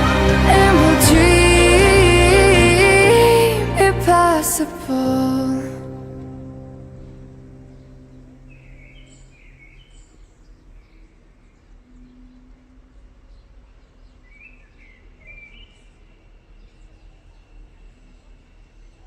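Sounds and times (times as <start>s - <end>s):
song note: 0.0s - 9.2s
birds chirping: 6.4s - 12.6s.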